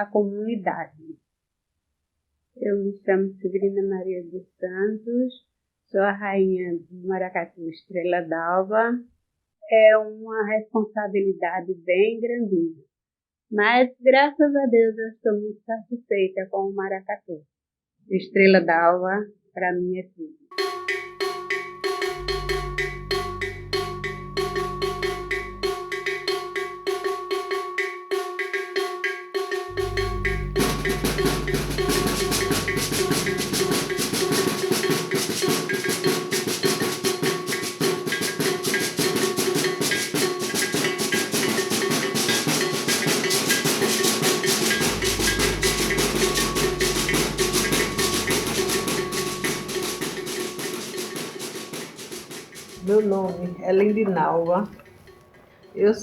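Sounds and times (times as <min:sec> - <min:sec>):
ringing tones: 0:20.5 - 0:28.4, 0:29.7 - 0:55.8
drum section playing rhythm: 0:20.5 - 0:55.1.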